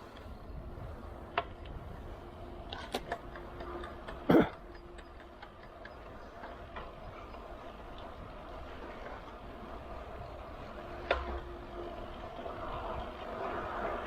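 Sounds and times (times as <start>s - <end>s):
bike clicks and knocks: 1.2s - 2.0s, 2.6s - 14.0s.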